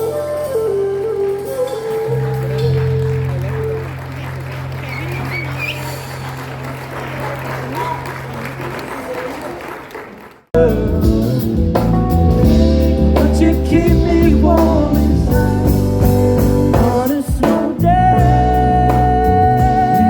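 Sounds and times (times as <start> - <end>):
applause: 1.1 - 10.5
song with singing guitar and drums: 10.6 - 20.0.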